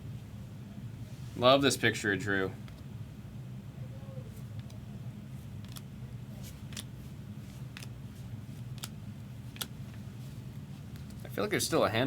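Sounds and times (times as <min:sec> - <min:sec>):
steady low hum: 0:00.0 - 0:12.0
trading cards clicking: 0:05.6 - 0:05.9.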